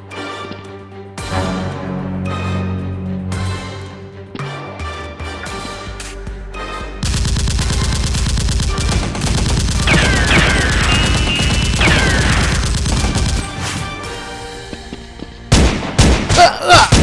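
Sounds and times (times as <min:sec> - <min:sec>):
rapid automatic gunfire: 0:07.0 - 0:13.8.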